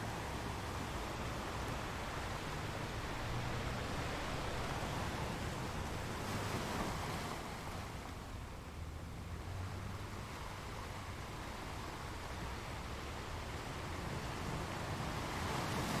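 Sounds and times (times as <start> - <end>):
sea waves washing on shore: 0.0 - 16.0.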